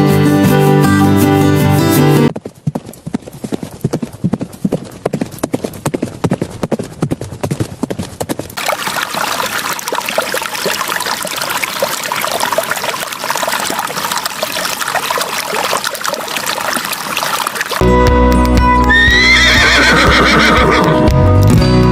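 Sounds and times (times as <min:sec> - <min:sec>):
rapid clip-clop knocks: 0:02.3 - 0:11.2
crackly trickling and pouring: 0:08.5 - 0:17.8.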